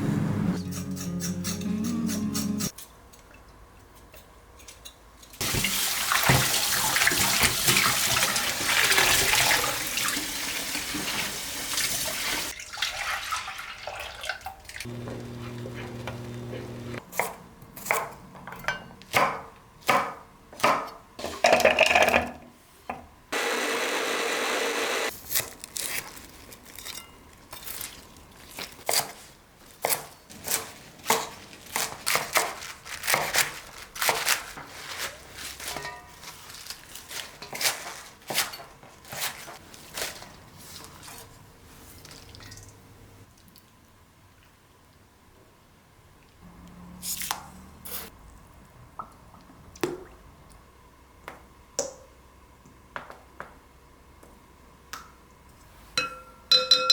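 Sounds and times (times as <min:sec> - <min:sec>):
steady hums: 0:14.9 - 0:17.0.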